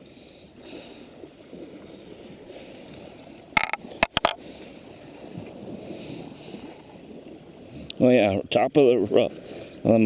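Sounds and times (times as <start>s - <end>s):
small waves on a beach: 0.0s - 10.0s.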